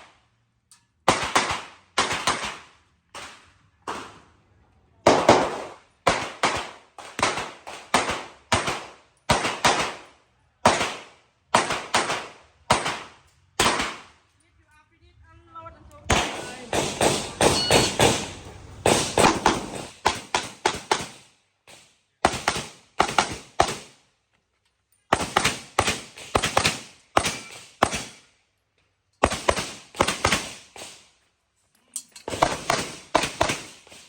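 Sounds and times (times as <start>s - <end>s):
handgun shots: 10.7s - 14.1s, 16.1s - 21.2s.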